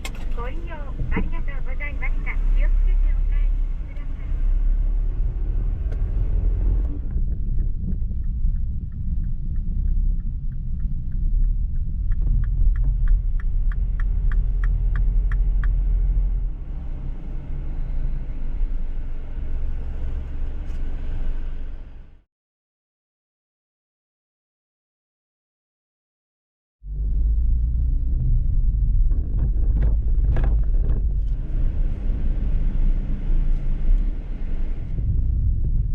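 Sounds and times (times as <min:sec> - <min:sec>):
car engine and road rumble: 0:00.0 - 0:22.2, 0:26.8 - 0:35.9
regular ticking: 0:07.0 - 0:15.9.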